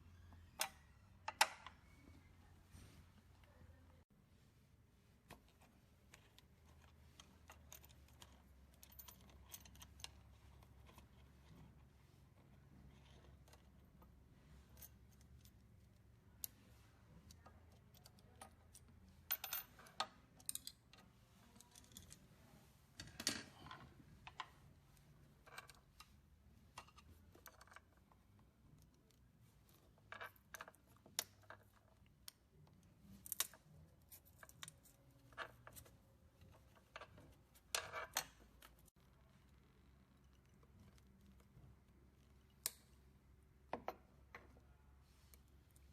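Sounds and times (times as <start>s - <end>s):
small parts clicking and rattling: 6.1s - 11.7s, 12.4s - 22.3s, 23.0s - 39.0s.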